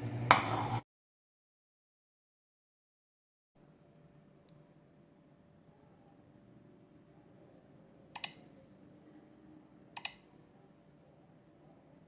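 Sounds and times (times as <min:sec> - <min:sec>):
faint steady hum: 0:03.6 - 0:12.0
sharp double clicks: 0:08.2 - 0:08.4, 0:10.0 - 0:10.3.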